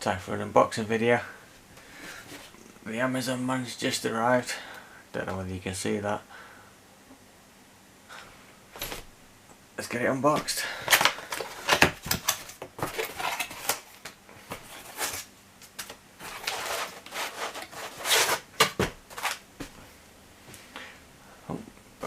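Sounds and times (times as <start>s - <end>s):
packaging rustling and tearing: 10.9s - 19.4s.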